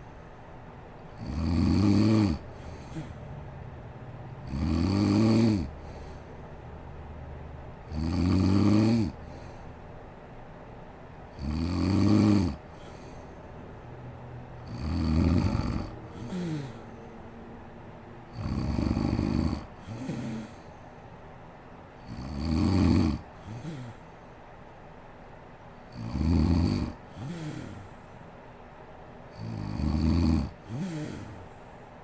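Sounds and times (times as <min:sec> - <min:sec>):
woman snoring: 0:01.2 - 0:03.2, 0:04.4 - 0:06.3, 0:07.9 - 0:09.6, 0:11.4 - 0:13.0, 0:14.6 - 0:17.0, 0:18.3 - 0:20.7, 0:22.1 - 0:24.0, 0:25.9 - 0:27.9, 0:29.4 - 0:31.4.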